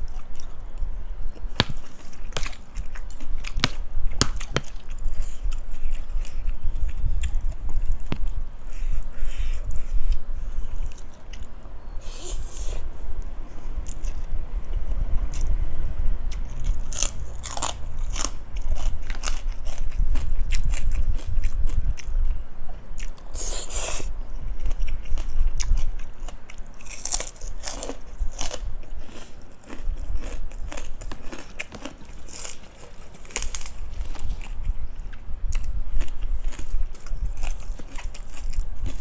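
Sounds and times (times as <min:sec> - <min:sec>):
chewing crunchy food: 0:00.0 - 0:12.8, 0:16.3 - 0:39.0.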